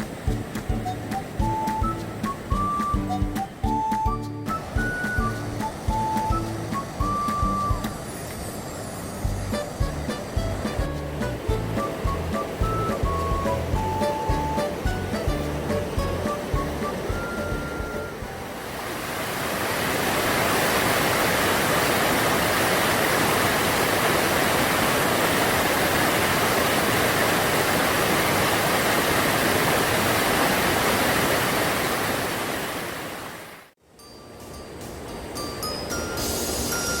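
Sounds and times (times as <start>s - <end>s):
background music: 0.0s - 8.0s, 9.2s - 18.7s
stream rushing over rocks: 0.0s - 8.7s, 9.4s - 33.7s.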